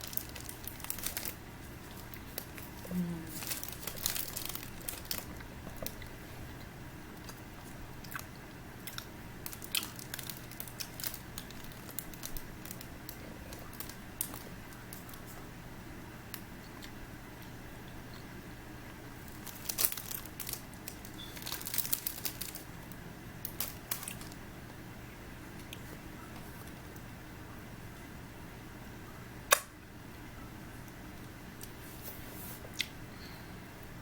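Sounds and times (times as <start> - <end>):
plastic wrapper crinkling: 0.0 - 6.1, 8.9 - 15.3, 19.2 - 24.4.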